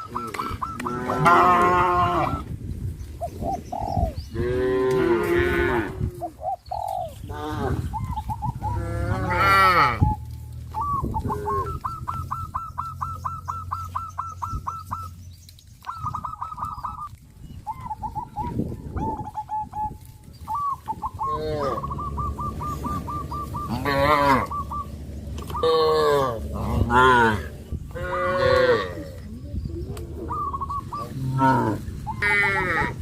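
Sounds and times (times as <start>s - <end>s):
cattle mooing: 0.3s - 2.4s, 4.4s - 6.1s, 8.6s - 10.1s, 11.2s - 12.2s, 21.3s - 24.8s, 25.4s - 29.3s, 31.0s - 33.0s
bird chirping: 10.0s - 26.0s, 29.0s - 31.2s.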